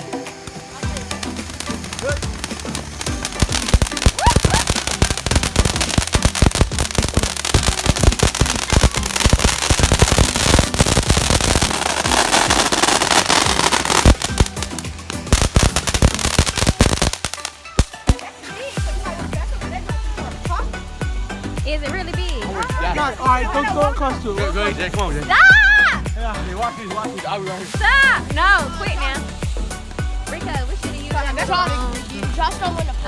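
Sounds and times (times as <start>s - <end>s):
firecracker cracks and pops: 0.0s - 18.5s
hissing crackle of fireworks: 0.0s - 21.6s.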